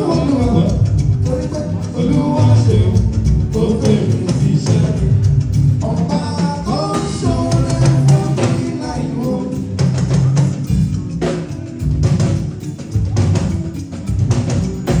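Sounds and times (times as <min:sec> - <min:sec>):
person singing: 0:00.0 - 0:10.2
drum kit beat: 0:00.0 - 0:15.0.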